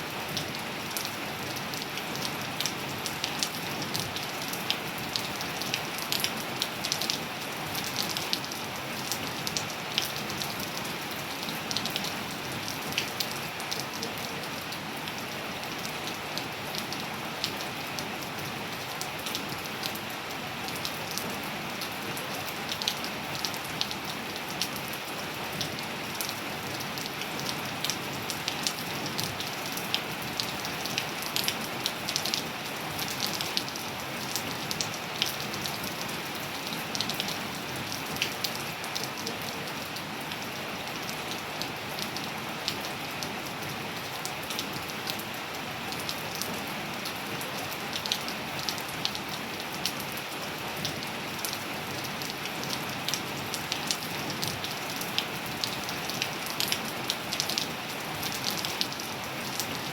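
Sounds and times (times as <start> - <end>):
steady rain hiss: 0.0 - 59.9.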